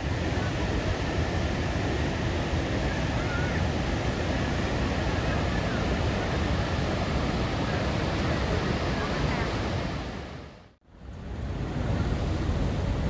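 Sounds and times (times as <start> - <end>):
waterfall roaring: 0.0 - 10.2.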